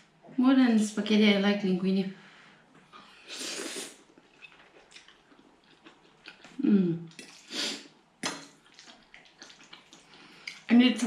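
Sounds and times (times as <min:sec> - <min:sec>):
wet chewing and mouth clicks: 0:04.0 - 0:07.6, 0:08.2 - 0:10.8
person humming: 0:06.6 - 0:07.1.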